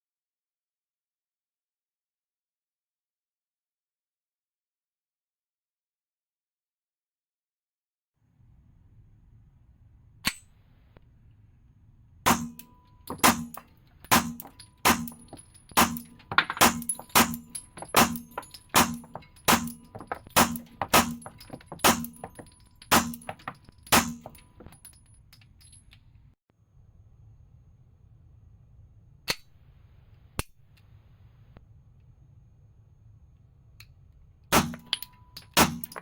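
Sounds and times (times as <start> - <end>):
pistol firing: 12.3 - 24.4, 34.5 - 36.0.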